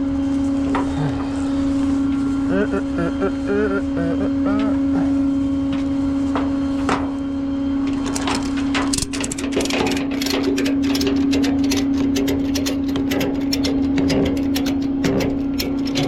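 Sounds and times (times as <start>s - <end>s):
steady hum: 0.0s - 16.0s
metal clicking and rattling: 7.9s - 16.0s.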